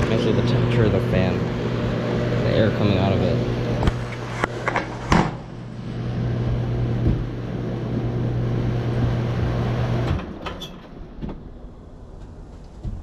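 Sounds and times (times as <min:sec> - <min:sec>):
air rushing from fan: 0:00.0 - 0:10.3
electrical hum: 0:00.0 - 0:13.0.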